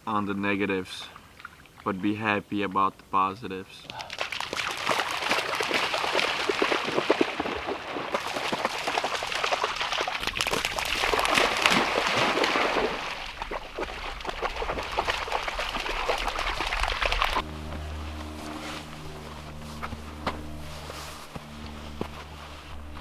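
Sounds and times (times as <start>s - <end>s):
water trickling and splashing: 1.0s - 2.1s, 3.8s - 23.0s
low rumble: 14.2s - 23.0s.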